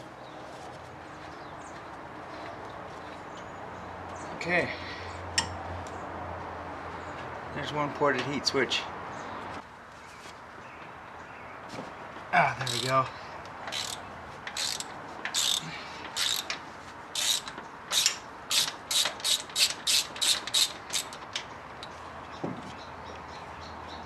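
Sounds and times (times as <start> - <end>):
socket ratchet clicking: 13.7 - 16.6, 17.2 - 21.2.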